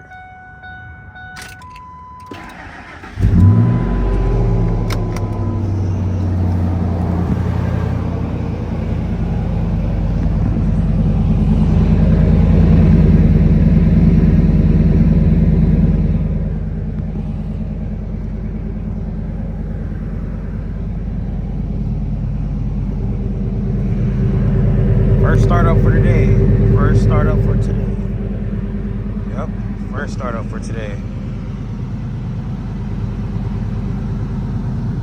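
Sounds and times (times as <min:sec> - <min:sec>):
car engine idling: 0:02.3 - 0:35.0.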